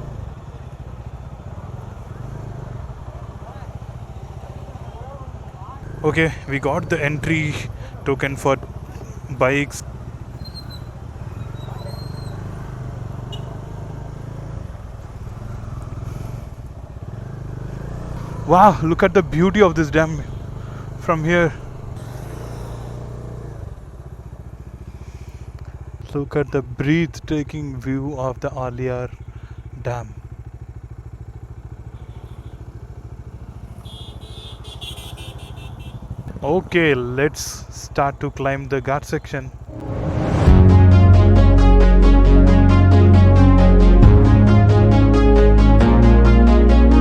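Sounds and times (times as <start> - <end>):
motorcycle engine idling: 0.0 - 41.2
rapid high-pitched chirping: 10.4 - 12.5.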